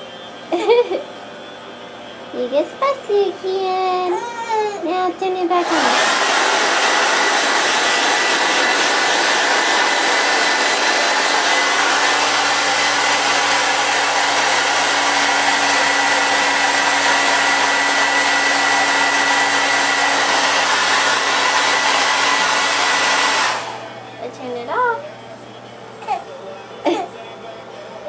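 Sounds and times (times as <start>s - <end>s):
hair dryer running: 4.9s - 25.0s.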